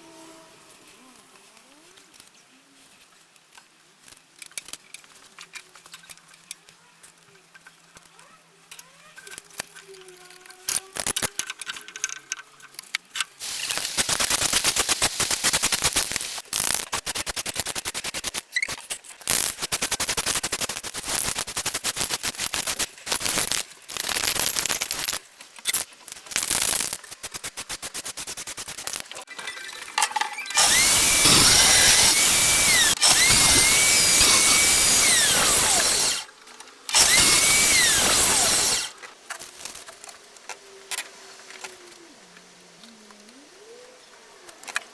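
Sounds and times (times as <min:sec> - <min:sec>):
power tool rapid rattling: 0:13.4 - 0:36.3, 0:36.9 - 0:39.0
motor whining: 0:30.4 - 0:36.3, 0:36.9 - 0:39.0.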